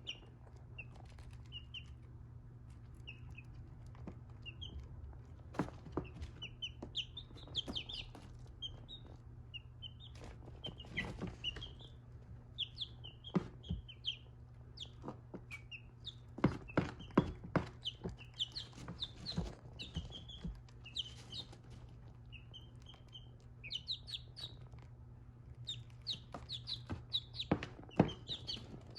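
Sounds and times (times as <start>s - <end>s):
chicks peeping: 0.0s - 28.9s
beaks tapping on dish: 12.6s - 21.5s, 25.7s - 28.9s.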